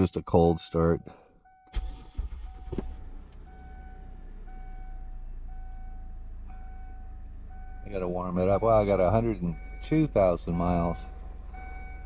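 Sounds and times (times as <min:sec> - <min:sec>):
car engine starting and idling: 0:00.0 - 0:12.0
warning chime beeping: 0:03.5 - 0:12.0.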